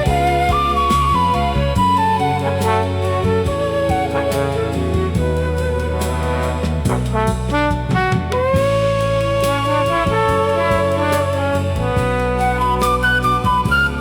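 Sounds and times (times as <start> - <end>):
remixed classical music: 0.0 - 14.0.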